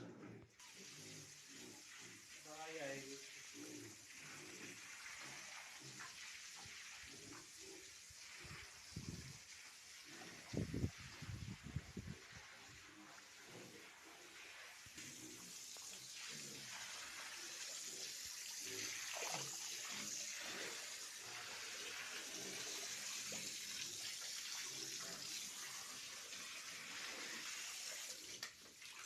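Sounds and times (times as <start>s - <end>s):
water spraying hiss: 0.6s - 28.8s.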